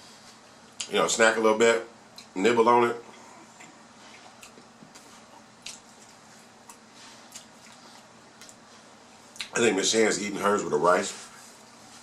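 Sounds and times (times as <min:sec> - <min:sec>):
wet chewing and lip-smacking: 0:03.1 - 0:08.7, 0:09.3 - 0:09.6.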